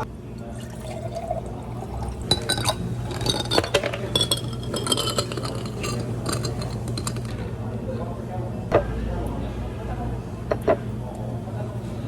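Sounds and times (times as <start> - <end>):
ice and glassware clinking: 0.6 - 7.5.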